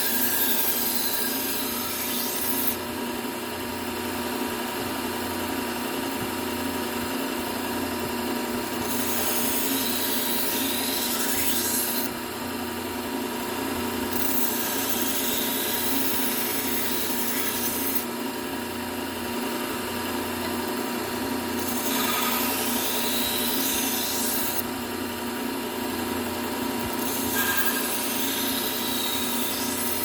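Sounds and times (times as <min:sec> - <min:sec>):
knife scraping on sander belt: 0:00.0 - 0:02.8, 0:08.8 - 0:12.1, 0:21.6 - 0:24.6, 0:27.0 - 0:30.0
belt sander motor hum: 0:07.5 - 0:18.1, 0:19.2 - 0:30.0.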